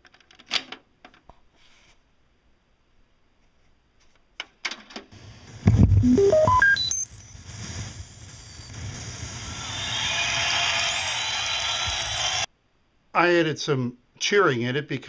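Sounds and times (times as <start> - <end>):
high held electronic whine: 5.6 - 11.9
electronic beeps rising in pitch: 6.0 - 8.7.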